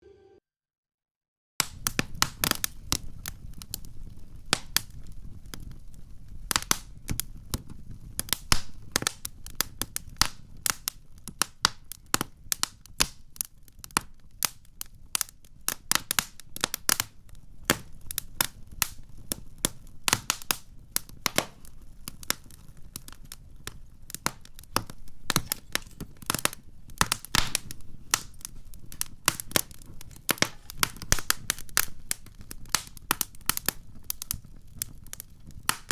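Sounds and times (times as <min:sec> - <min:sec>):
wood crackling and popping: 0:01.6 - 0:35.9
flames rushing: 0:16.6 - 0:35.9.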